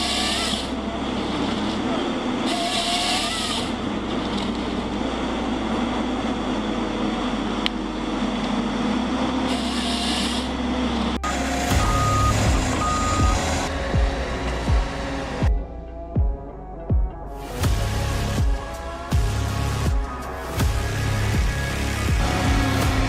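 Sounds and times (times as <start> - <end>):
diesel engine running: 0.0 - 16.0, 17.5 - 23.0
reversing alarm beeps: 11.2 - 13.7.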